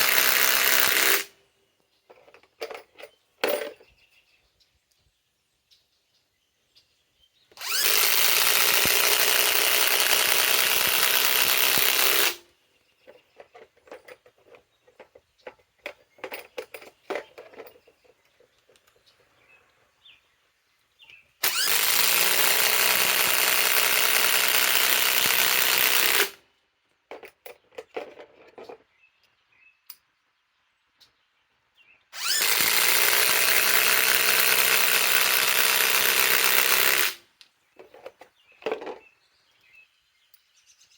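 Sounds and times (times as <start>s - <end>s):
impact wrench hammering screws: 0.0s - 1.4s, 7.5s - 12.4s, 21.4s - 26.4s, 32.2s - 37.2s.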